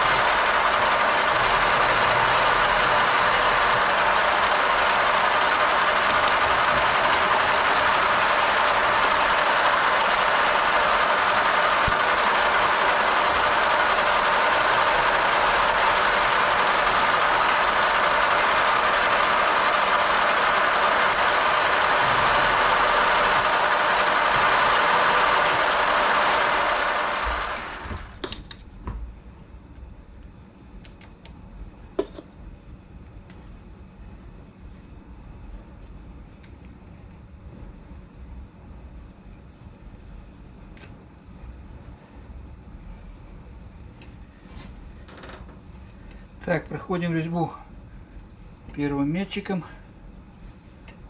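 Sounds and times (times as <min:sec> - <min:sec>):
machine tool running: 0:00.0 - 0:28.4, 0:42.8 - 0:51.0.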